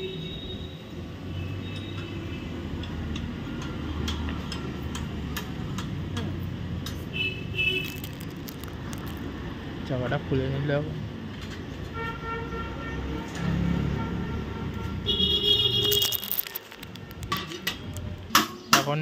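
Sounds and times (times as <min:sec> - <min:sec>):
low traffic hum: 0:00.0 - 0:19.0
metal clicks of hand tools: 0:02.8 - 0:07.0.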